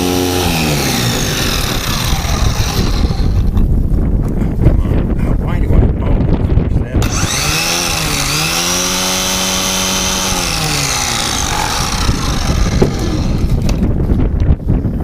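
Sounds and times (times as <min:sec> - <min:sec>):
grinder motor spinning: 0:00.0 - 0:03.7, 0:07.0 - 0:14.0.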